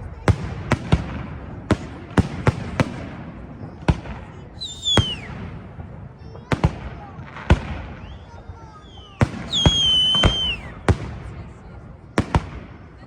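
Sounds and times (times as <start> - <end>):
fireworks banging: 0.2 - 11.4
high falling whistle: 4.6 - 5.3, 9.5 - 10.6.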